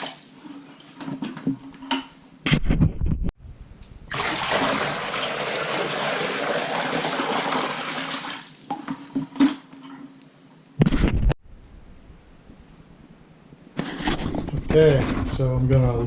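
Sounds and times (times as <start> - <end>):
water pouring: 4.1 - 8.5.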